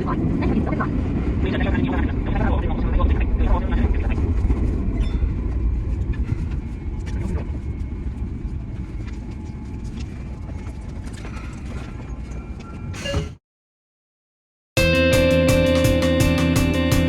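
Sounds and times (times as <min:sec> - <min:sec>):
electric train rumbling: 0:00.0 - 0:13.1, 0:14.8 - 0:17.0.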